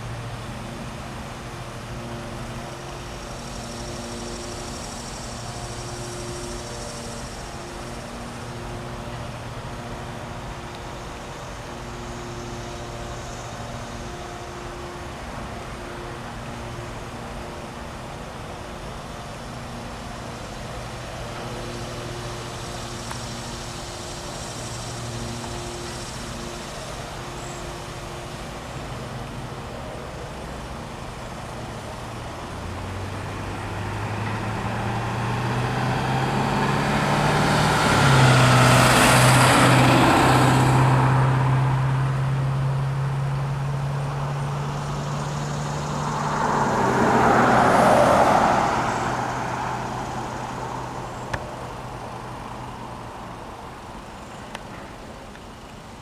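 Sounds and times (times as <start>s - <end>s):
diesel engine drone: 0.0s - 56.0s.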